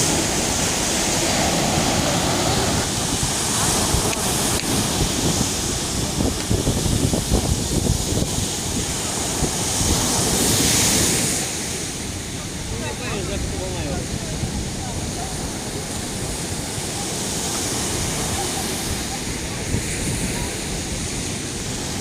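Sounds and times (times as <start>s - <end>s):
stormy sea surf breaking: 0.0s - 22.0s
wind buffeting microphone: 0.0s - 22.0s.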